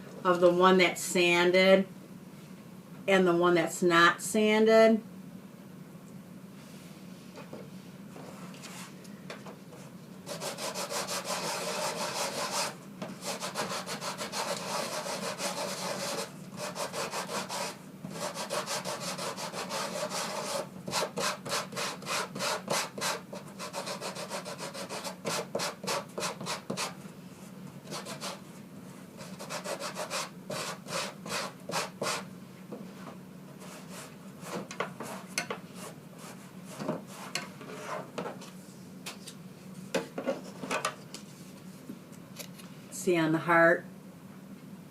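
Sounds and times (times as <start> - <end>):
sanding block scraping cardstock: 10.3 - 27.0, 29.2 - 32.2.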